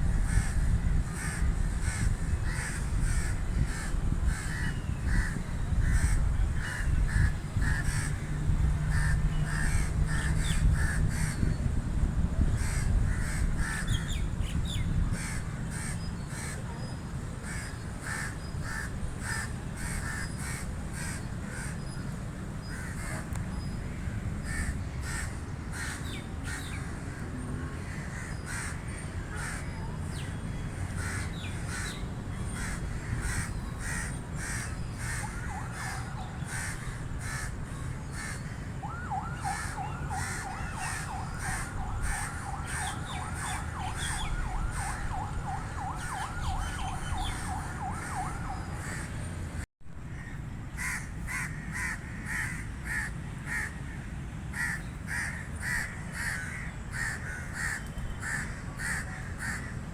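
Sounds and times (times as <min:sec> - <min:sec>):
crows cawing: 0:00.1 - 0:08.3, 0:08.9 - 0:11.4, 0:12.6 - 0:14.0, 0:17.4 - 0:21.8, 0:22.7 - 0:23.3, 0:24.4 - 0:27.2, 0:27.8 - 0:29.7, 0:30.8 - 0:38.7, 0:39.4 - 0:45.0, 0:48.8 - 0:49.1, 0:50.1 - 0:59.8.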